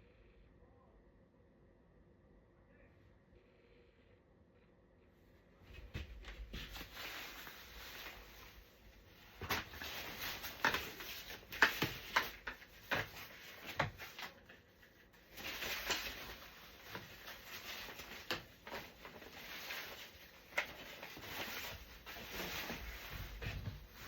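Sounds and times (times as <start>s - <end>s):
rustling: 5.7s - 24.0s
plastic parts clicking and knocking: 9.4s - 24.0s.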